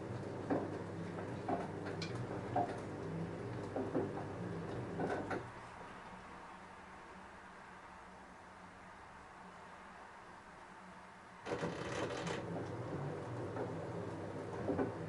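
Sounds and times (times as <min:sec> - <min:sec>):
washing machine motor hum: 0:00.0 - 0:05.5, 0:11.5 - 0:15.0.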